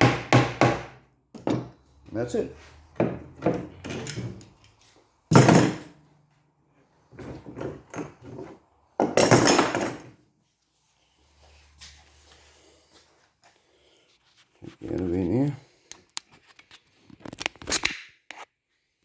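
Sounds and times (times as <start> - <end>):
scraping thumps of wood and tools: 1.4 - 6.0, 6.9 - 10.2.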